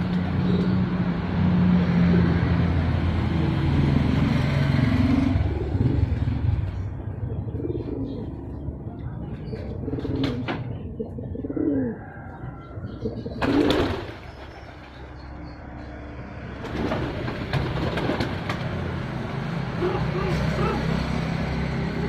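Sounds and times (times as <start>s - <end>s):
pigeons cooing: 5.1s - 14.8s.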